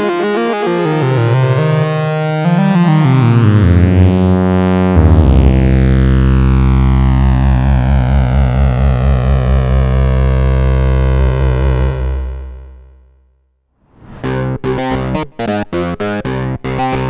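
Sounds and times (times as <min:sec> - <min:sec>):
synthesizer lead with bright sweep: 0:03.5 - 0:06.2.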